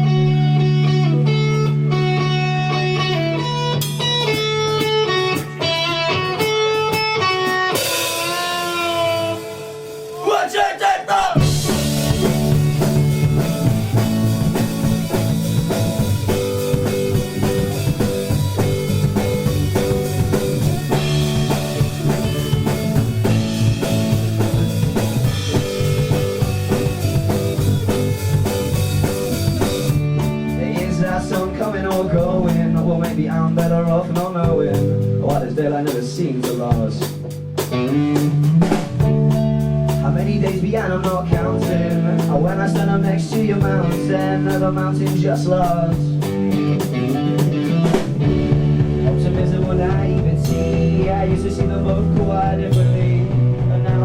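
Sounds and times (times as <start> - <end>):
bass notes: 0.0 - 9.6, 11.4 - 54.0
electric guitar riff: 0.0 - 10.2, 11.4 - 33.2, 43.7 - 54.0
live rock band playing: 0.0 - 10.4, 11.1 - 54.0
drums: 0.0 - 54.0.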